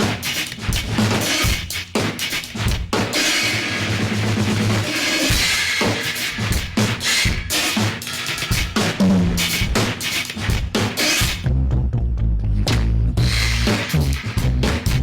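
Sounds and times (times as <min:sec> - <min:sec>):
kick and snare drum groove: 0:00.0 - 0:11.6, 0:12.7 - 0:15.0
low bass line: 0:11.4 - 0:15.0.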